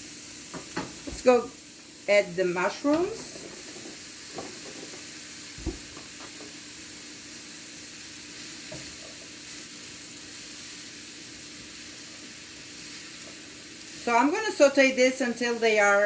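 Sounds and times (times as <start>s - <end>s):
vegetables sizzling in oil: 0.0s - 16.0s
knock: 5.6s - 6.5s.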